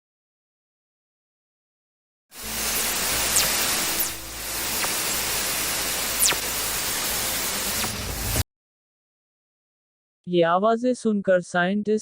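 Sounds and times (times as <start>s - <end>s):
static hiss: 2.4s - 8.4s.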